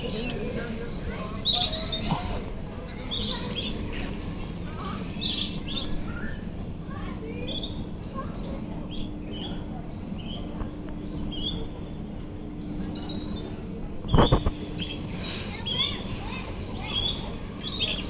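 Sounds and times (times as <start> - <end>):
birds chirping and whistling: 0.0 - 6.6, 12.6 - 18.0.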